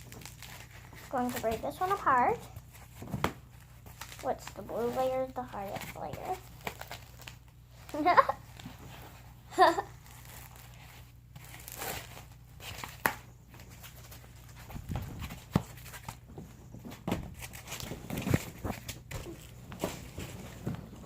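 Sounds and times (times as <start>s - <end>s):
cardboard rustling: 0.0s - 21.0s
cardboard tearing: 9.7s - 13.2s, 17.3s - 20.7s.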